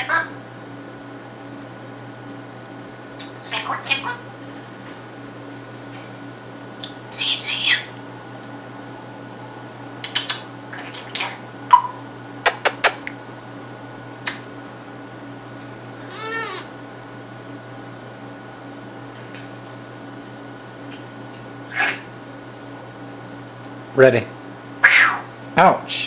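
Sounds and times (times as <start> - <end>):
steady hum: 0.0 - 26.0
parrot squawking and whistling: 3.3 - 4.2, 7.1 - 7.9, 10.0 - 12.0, 16.1 - 16.7, 21.7 - 22.1, 24.8 - 25.3.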